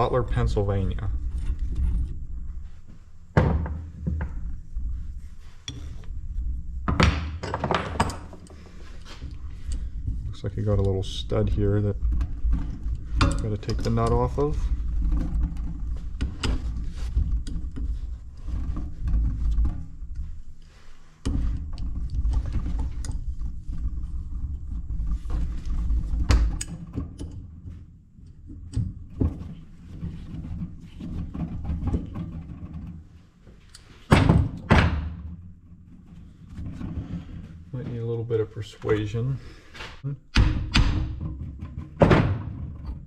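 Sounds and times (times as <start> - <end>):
steady low hum: 0.0 - 34.3.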